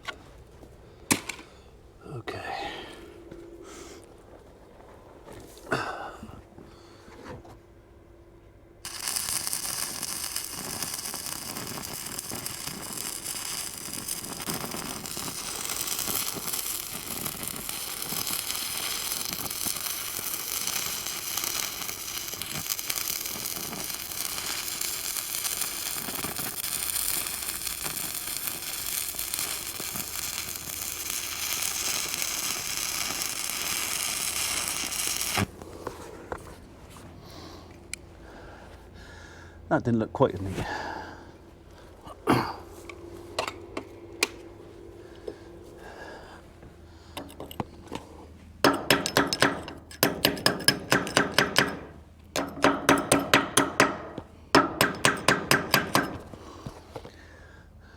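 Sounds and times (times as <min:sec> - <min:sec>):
arc welder crackling sizzle: 0:08.8 - 0:36.0, 0:47.8 - 0:57.1.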